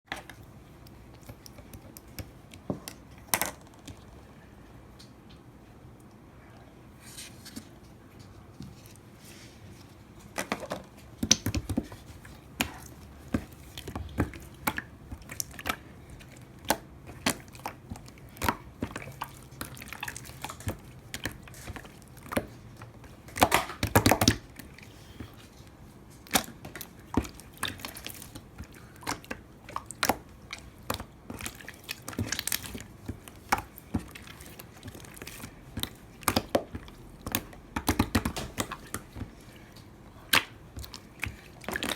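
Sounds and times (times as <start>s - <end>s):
slime squishing and popping: 11.2s - 24.8s, 26.2s - 39.4s
slime crackling: 11.2s - 41.9s.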